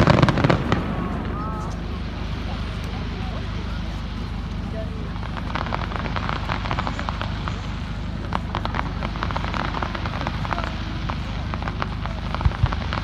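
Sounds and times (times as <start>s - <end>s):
fireworks crackling: 0.0s - 13.0s
low rumble: 0.0s - 13.0s.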